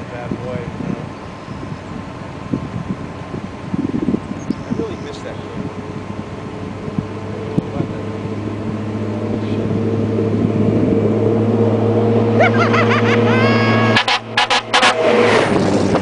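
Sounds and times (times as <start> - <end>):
truck diesel engine running: 0.0 - 16.0
rising whines: 6.9 - 16.0.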